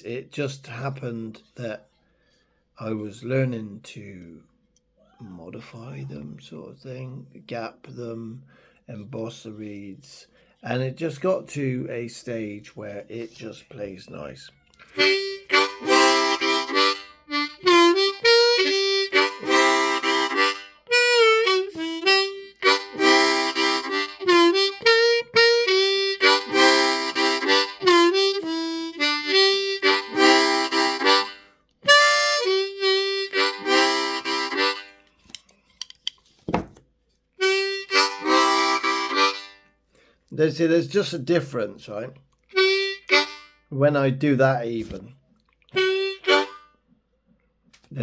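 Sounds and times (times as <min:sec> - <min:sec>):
harmonica chord strokes: 0:14.9 - 0:35.0, 0:37.4 - 0:39.7, 0:42.6 - 0:43.6, 0:45.8 - 0:46.8.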